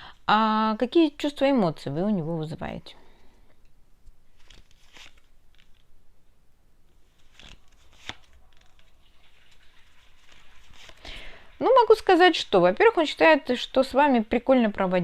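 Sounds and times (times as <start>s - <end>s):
cards swishing and snapping: 4.3s - 5.9s, 7.0s - 11.1s.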